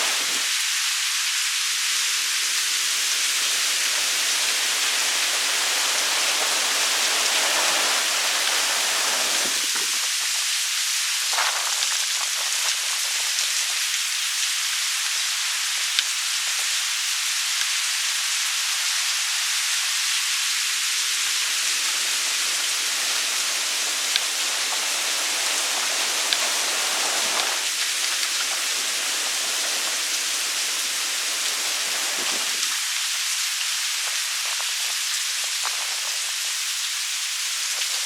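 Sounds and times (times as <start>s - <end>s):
steady rain hiss: 0.0s - 38.0s
raindrop ticks: 15.9s - 16.7s, 24.0s - 33.2s, 34.0s - 36.4s.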